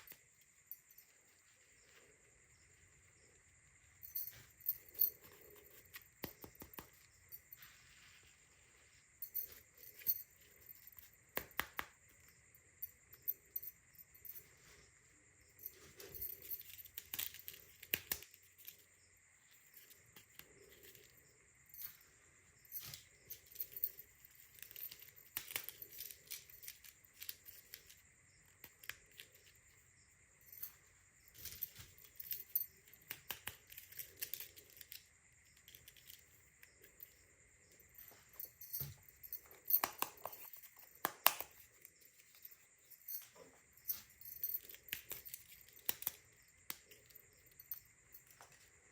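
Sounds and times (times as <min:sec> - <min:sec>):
plastic toys and packaging handled: 0:00.0 - 0:03.0, 0:15.5 - 0:48.9
faint steady high whine: 0:00.0 - 0:48.9.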